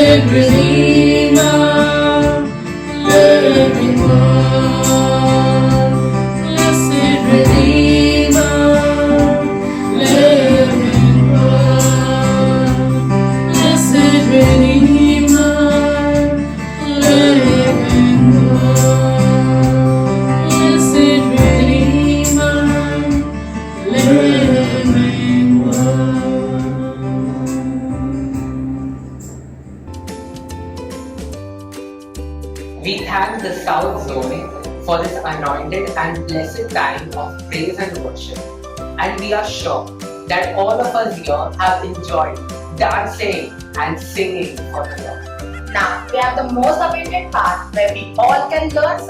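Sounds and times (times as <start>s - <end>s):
worship song singing: 0.0s - 31.4s
instruments with held bass notes: 24.0s - 31.7s.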